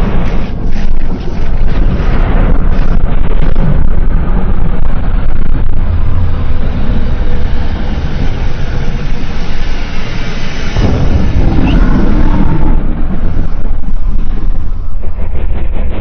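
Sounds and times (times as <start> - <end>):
monster rumbling: 0.0 - 16.0.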